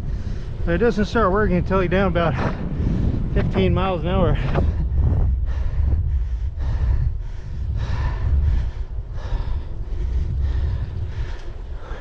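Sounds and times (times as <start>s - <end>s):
wind buffeting microphone: 0.0s - 12.0s
hard rhythmic breathing: 4.5s - 12.0s.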